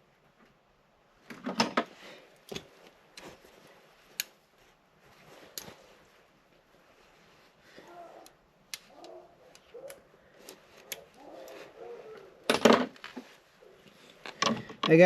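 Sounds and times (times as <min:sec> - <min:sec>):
objects clattering when handled: 0:08.9 - 0:15.0.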